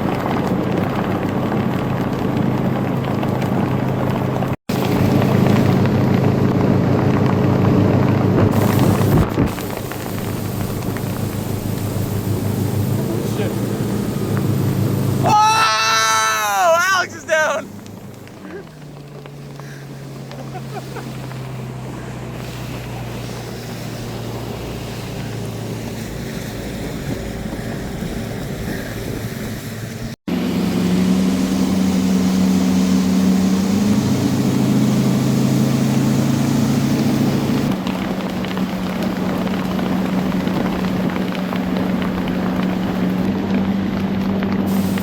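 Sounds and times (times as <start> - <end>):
motorboat engine running: 0.0 - 15.3, 17.6 - 45.0
wind on microphone: 22.3 - 30.2.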